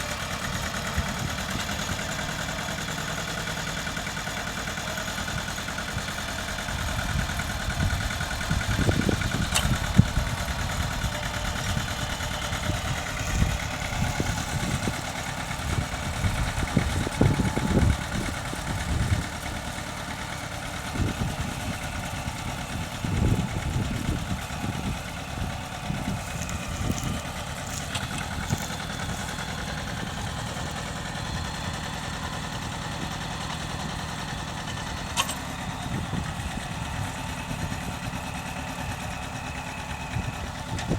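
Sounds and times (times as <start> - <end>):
tractor engine running: 0.0 - 40.9.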